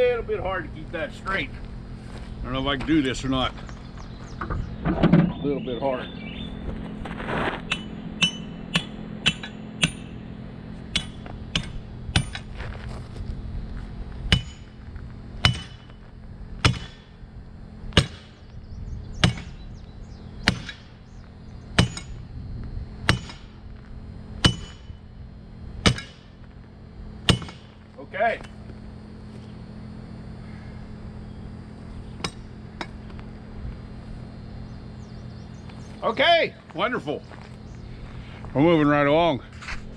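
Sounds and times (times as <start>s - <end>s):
hammer striking metal spike: 7.7s - 10.2s, 10.9s - 12.5s, 14.3s - 14.7s, 15.4s - 15.9s, 16.6s - 17.0s, 20.5s - 21.0s, 21.8s - 22.2s, 23.1s - 23.5s, 24.4s - 24.9s, 25.8s - 26.3s, 27.3s - 27.7s.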